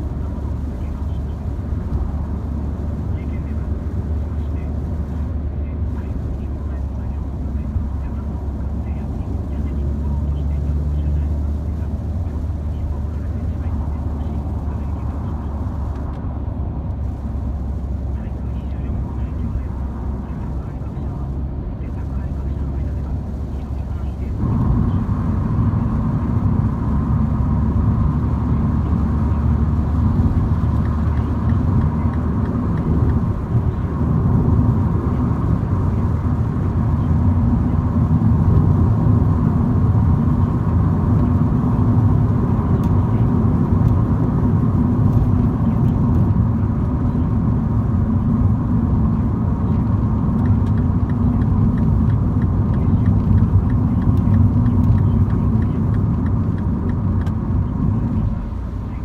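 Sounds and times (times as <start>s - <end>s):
car engine and road noise: 0.0s - 59.0s.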